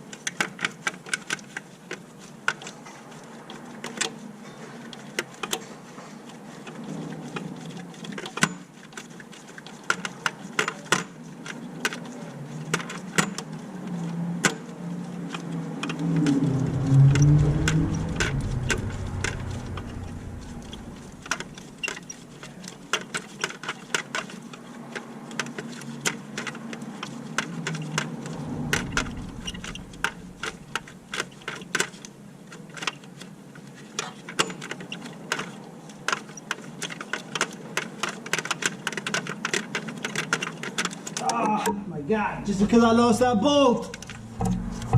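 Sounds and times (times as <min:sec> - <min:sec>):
low rumble: 0:15.9 - 0:21.9, 0:28.1 - 0:31.5, 0:43.9 - 0:44.9.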